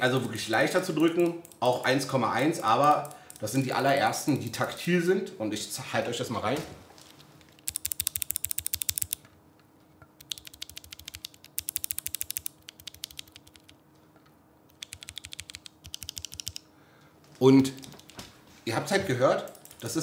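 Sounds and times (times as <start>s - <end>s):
clicky keyboard keys typing: 7.6s - 9.2s, 10.2s - 13.8s, 14.7s - 16.6s, 17.7s - 18.2s, 19.5s - 20.0s.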